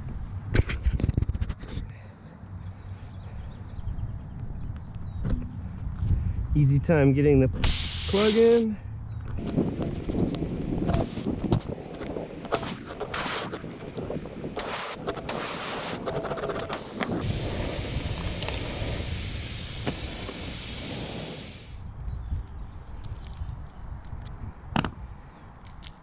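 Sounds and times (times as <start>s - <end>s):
air hissing from puncture: 7.6s - 8.7s, 10.9s - 11.7s, 12.5s - 21.9s
reamer rasping in tire: 7.6s - 8.7s, 10.9s - 11.5s, 12.4s - 21.8s.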